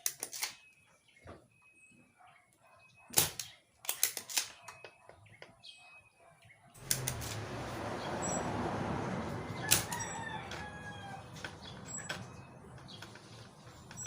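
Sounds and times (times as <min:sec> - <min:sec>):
sharp clicks: 0:03.1 - 0:05.6, 0:06.8 - 0:07.4
rooster crowing: 0:09.0 - 0:11.6.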